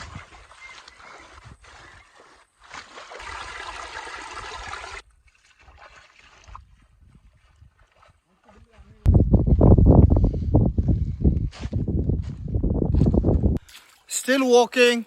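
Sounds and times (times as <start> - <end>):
wind rumbling on microphone: 0.0 - 2.1, 6.4 - 13.7
stream water trickling: 0.0 - 8.6, 13.6 - 15.0.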